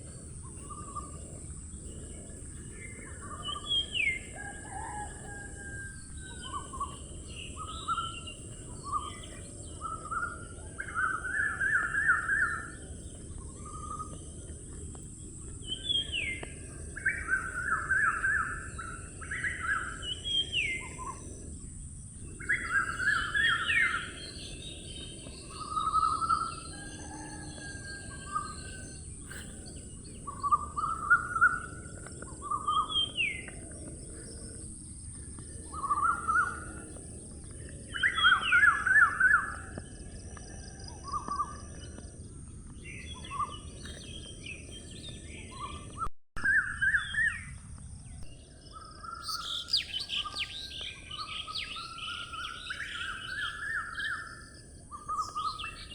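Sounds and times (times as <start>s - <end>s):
steady high-pitched hiss: 0.0s - 27.1s
songbirds chirping: 0.0s - 46.1s, 46.9s - 55.9s.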